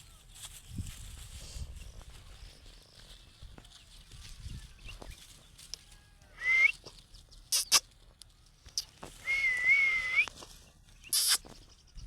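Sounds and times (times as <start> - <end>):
parrot harsh chirps: 7.5 - 7.8, 11.1 - 11.4.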